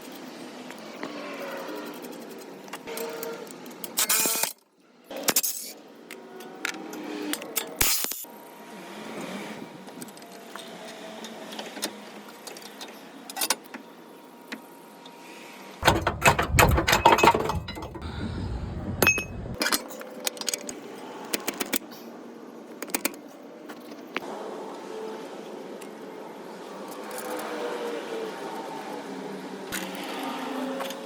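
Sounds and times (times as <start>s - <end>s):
metal tools clinking: 15.8s - 18.1s, 19.0s - 19.8s
rapid metallic rattling and banging: 15.8s - 19.6s.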